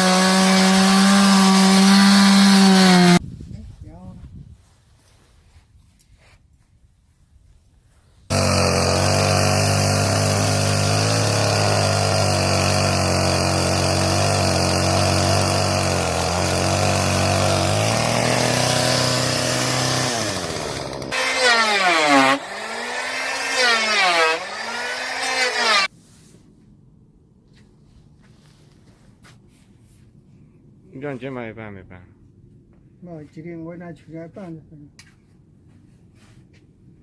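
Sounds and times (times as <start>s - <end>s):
chainsaw cutting wood: 0.0s - 3.2s, 8.3s - 25.9s.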